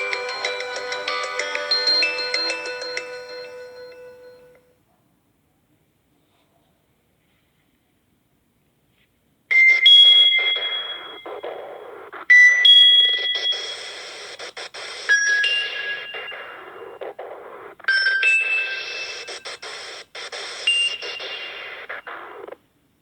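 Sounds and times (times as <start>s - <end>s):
mobile phone ringtone: 0.0s - 4.6s, 9.5s - 11.8s, 12.4s - 17.2s, 17.9s - 22.0s.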